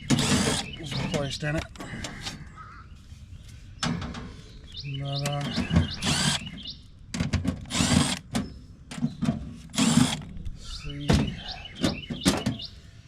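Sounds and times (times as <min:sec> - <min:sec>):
drill clicks: 0:00.0 - 0:00.8, 0:05.9 - 0:06.6, 0:07.6 - 0:08.4, 0:09.7 - 0:10.3
cordless drill spinning up: 0:06.0 - 0:06.4, 0:07.7 - 0:08.2, 0:09.7 - 0:10.2.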